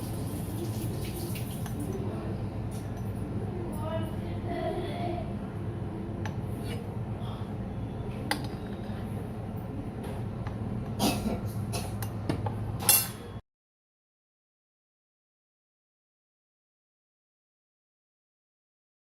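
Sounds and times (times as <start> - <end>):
steady low hum: 1.6 - 13.4
metal utensils clinking: 12.8 - 13.2.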